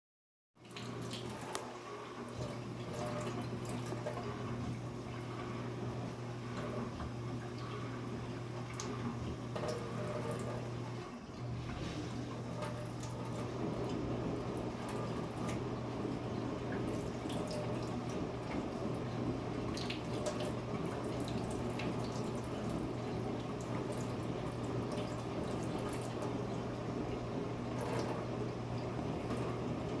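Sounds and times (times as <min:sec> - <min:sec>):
tap water running into sink: 0:11.7 - 0:19.0, 0:19.6 - 0:30.0.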